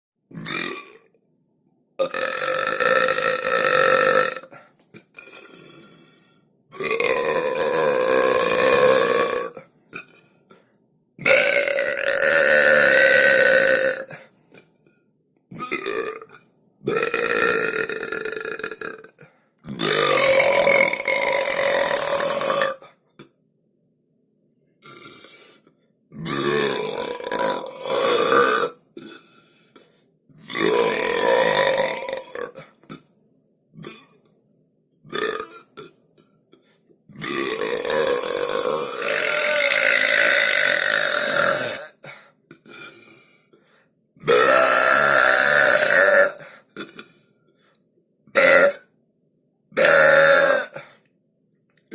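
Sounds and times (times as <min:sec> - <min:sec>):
long loud belches: 0:00.3 - 0:01.2, 0:02.0 - 0:05.8, 0:06.7 - 0:10.2, 0:11.2 - 0:14.2, 0:15.5 - 0:23.0, 0:24.8 - 0:25.4, 0:26.1 - 0:29.3, 0:30.4 - 0:33.1, 0:33.8 - 0:34.2, 0:35.1 - 0:36.0, 0:37.1 - 0:43.1, 0:44.2 - 0:47.1, 0:48.3 - 0:48.9, 0:49.8 - 0:51.0.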